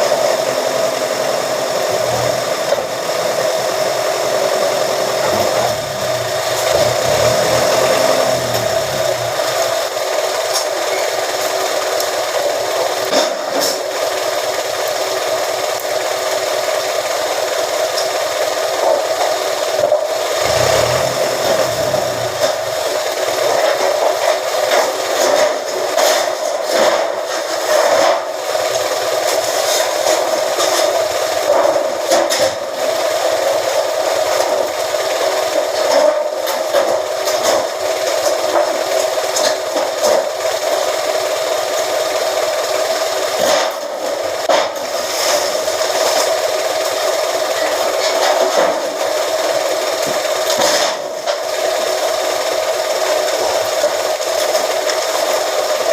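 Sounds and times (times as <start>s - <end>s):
press machine drone: 0.0s - 11.5s, 20.3s - 23.5s.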